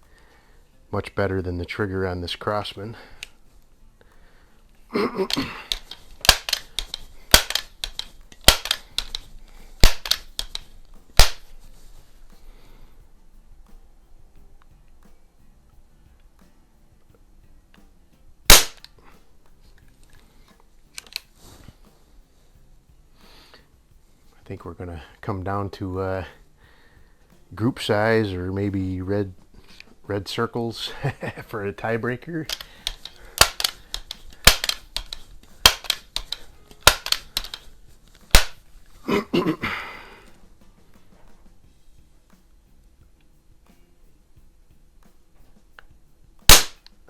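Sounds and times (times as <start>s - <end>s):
sharp clicks: 5.2s - 11.6s, 18.5s - 19.0s, 21.0s - 21.3s, 32.4s - 38.8s, 46.5s - 47.0s
air rifle pump clacks: 5.2s - 12.7s, 18.5s - 22.1s, 31.7s - 41.4s
handling rustle: 5.2s - 12.7s, 31.3s - 39.6s
air rifle shot: 5.3s - 9.2s, 9.8s - 10.3s, 11.2s - 11.5s, 18.5s - 18.9s, 32.5s - 34.8s, 35.6s - 37.5s, 38.3s - 38.6s, 46.5s - 46.8s.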